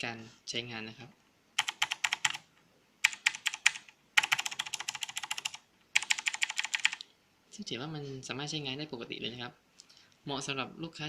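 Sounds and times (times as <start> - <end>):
fast mechanical keyboard typing: 1.6 - 2.4, 3.0 - 7.0.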